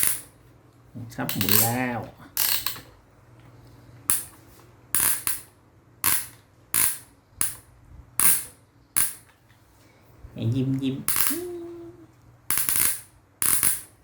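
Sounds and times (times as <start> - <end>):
toy crane crank ratcheting: 1.3 - 1.8, 2.4 - 2.8, 12.5 - 14.0.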